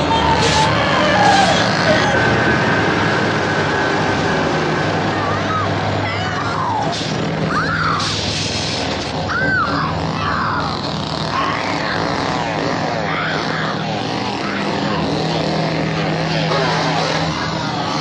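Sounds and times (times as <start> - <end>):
chainsaw revving: 6.9 - 18.0.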